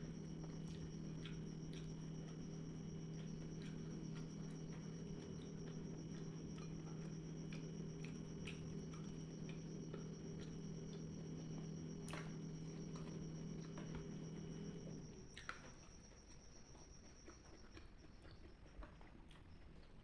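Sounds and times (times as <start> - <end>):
steady low hum: 0.0 - 19.0
chewing noises: 0.2 - 11.0, 17.0 - 20.0.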